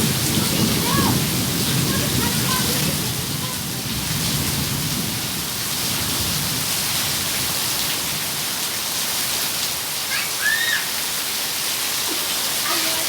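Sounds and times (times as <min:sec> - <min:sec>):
low thunder rumble: 0:00.0 - 0:08.4
steady rain hissing: 0:00.0 - 0:13.0.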